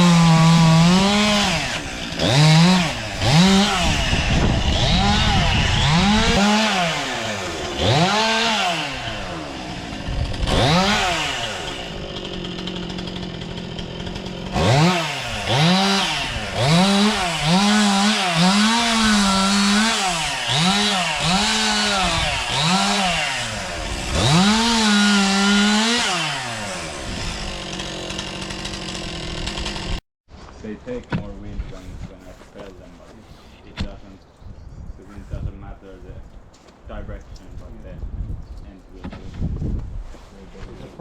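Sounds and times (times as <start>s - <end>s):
chainsaw revving: 0.0s - 30.0s.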